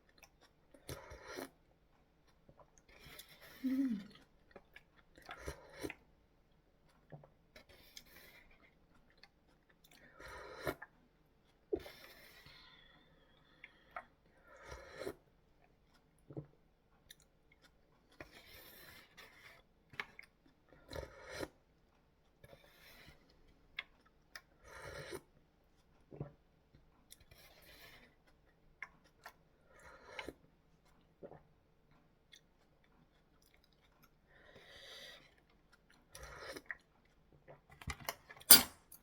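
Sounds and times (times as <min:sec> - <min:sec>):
person chewing food: 0:00.0 - 0:38.4.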